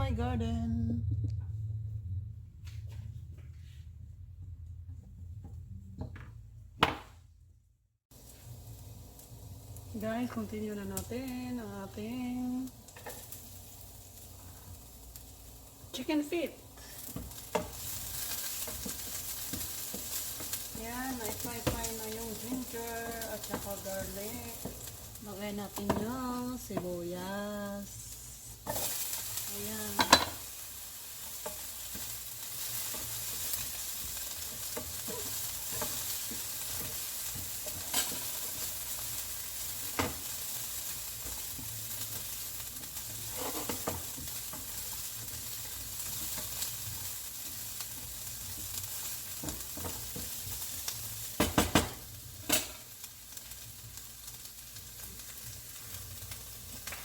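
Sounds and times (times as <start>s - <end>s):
food sizzling in hot oil: 8.1s - 57.0s.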